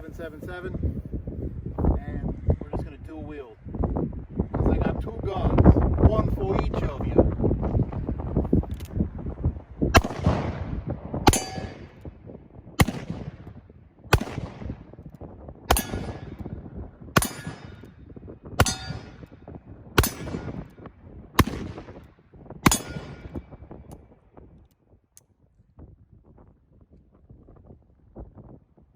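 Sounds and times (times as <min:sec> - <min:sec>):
revolver shots with ringing tail: 0:11.3 - 0:12.0, 0:15.7 - 0:16.6, 0:17.2 - 0:18.0, 0:18.6 - 0:19.3, 0:20.0 - 0:20.6, 0:22.7 - 0:23.4.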